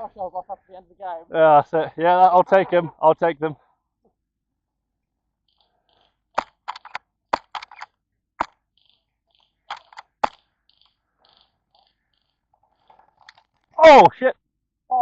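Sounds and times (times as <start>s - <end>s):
airsoft guns firing: 6.3s - 8.6s, 9.7s - 10.5s.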